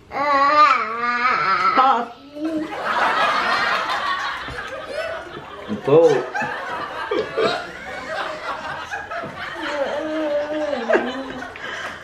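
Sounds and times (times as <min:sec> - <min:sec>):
people laughing: 0:02.6 - 0:12.0.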